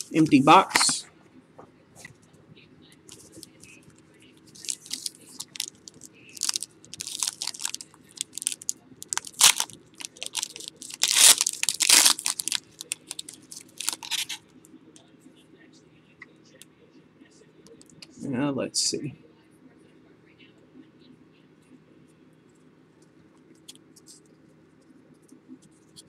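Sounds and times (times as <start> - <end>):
packaging crinkling and tearing: 4.5 - 14.4.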